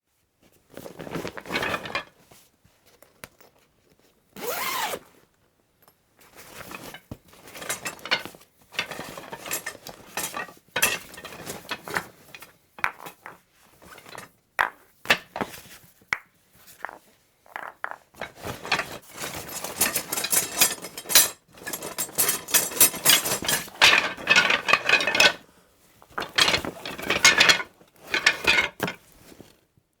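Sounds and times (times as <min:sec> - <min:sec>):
rummaging in a bag: 0:00.5 - 0:05.1, 0:18.2 - 0:29.6.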